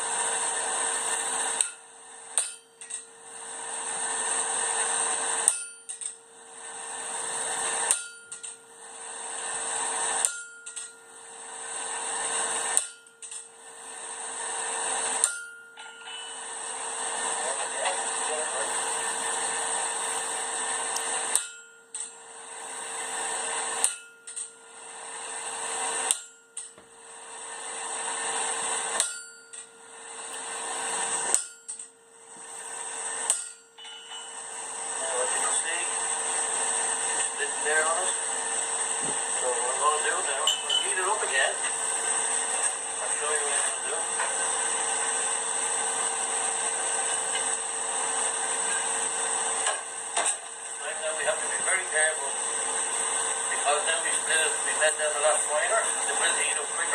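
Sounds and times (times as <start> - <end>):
faint high whine: 0.0 - 56.9
steady hum and hiss: 0.0 - 56.9
hammer striking steel on anvil: 1.6 - 3.1, 5.2 - 6.2, 7.6 - 8.6, 10.0 - 11.0, 12.4 - 13.5, 15.0 - 16.8, 20.9 - 22.2, 23.3 - 24.6, 25.7 - 26.9, 28.5 - 32.0, 32.9 - 34.6, 40.4 - 40.9.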